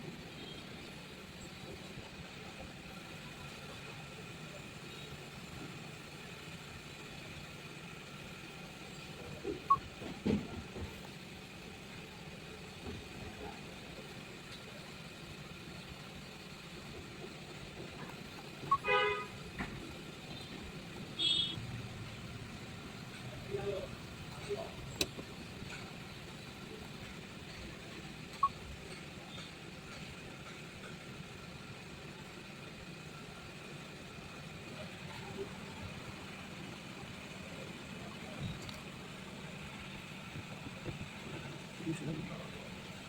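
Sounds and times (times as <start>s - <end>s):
steady background hum: 0.0s - 43.0s
vehicle horn toot: 18.7s - 19.4s, 21.2s - 21.6s.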